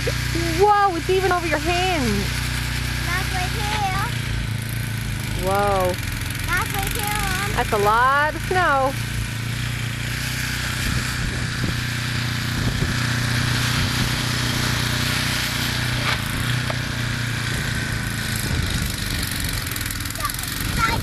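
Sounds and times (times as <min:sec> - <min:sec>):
snowblower engine idling: 0:00.0 - 0:21.0.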